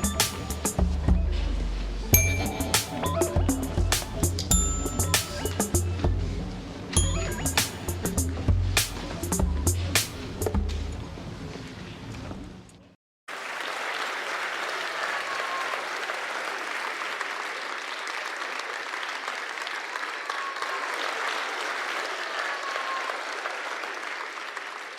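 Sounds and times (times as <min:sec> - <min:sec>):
music: 0:00.0 - 0:11.1
audience applause: 0:13.3 - 0:24.9.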